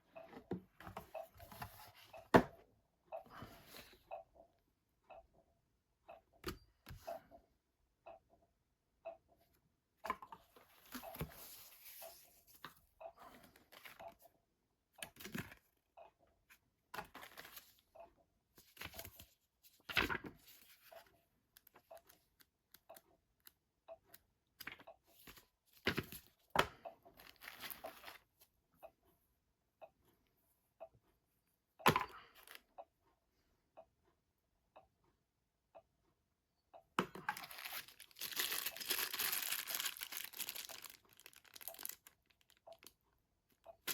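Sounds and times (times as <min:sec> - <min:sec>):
wrapping rustling and crinkling: 0:27.2 - 0:28.3, 0:37.3 - 0:42.9.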